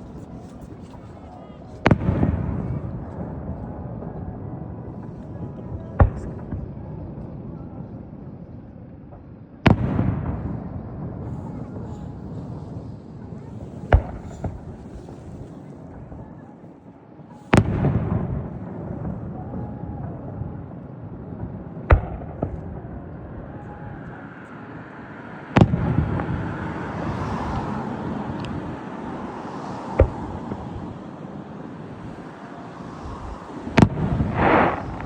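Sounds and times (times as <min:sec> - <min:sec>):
fireworks bangs: 0:00.0 - 0:07.3, 0:09.2 - 0:16.2, 0:17.5 - 0:24.0, 0:25.6 - 0:35.0.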